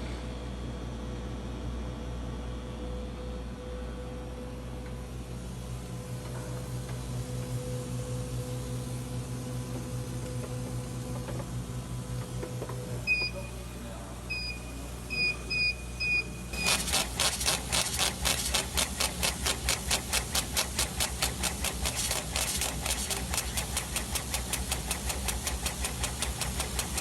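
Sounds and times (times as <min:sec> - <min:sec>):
laser machine fans humming: 0:04.1 - 0:27.0
laser head shuttling back and forth: 0:16.6 - 0:27.0.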